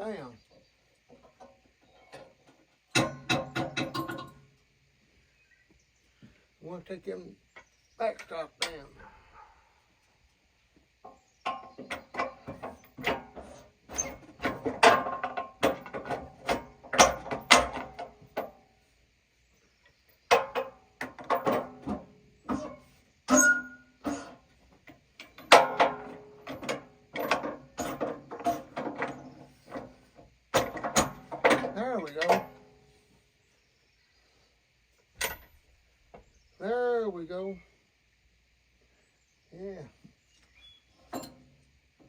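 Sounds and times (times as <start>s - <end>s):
hydraulic log-handling gear: 1.1s - 4.5s, 11.0s - 18.6s, 20.2s - 32.7s, 40.6s - 41.5s
metal clanks and knocks: 1.1s - 4.5s, 11.0s - 18.6s, 20.3s - 32.8s, 41.1s - 41.5s.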